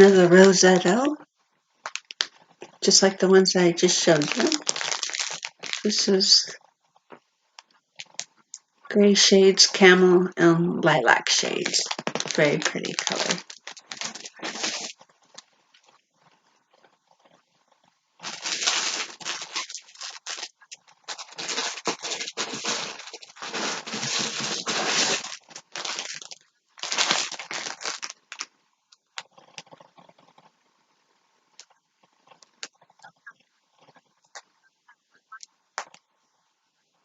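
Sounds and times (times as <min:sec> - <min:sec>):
plastic packaging crinkling: 0:01.8 - 0:03.1, 0:03.8 - 0:06.3, 0:11.1 - 0:15.4, 0:18.2 - 0:28.5.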